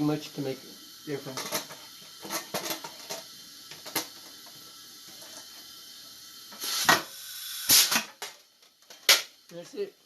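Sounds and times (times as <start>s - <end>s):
faint steady hiss: 0.0s - 10.0s
rising hiss: 5.8s - 8.0s.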